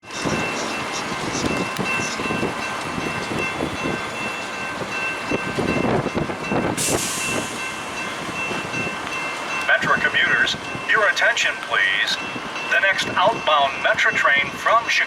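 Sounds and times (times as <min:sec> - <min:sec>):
wind buffeting microphone: 0:00.0 - 0:10.9.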